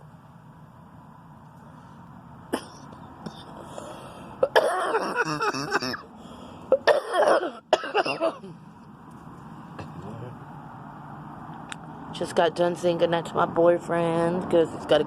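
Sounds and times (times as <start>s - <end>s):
woman coughing: 2.5s - 2.9s, 4.4s - 6.0s, 6.8s - 8.6s.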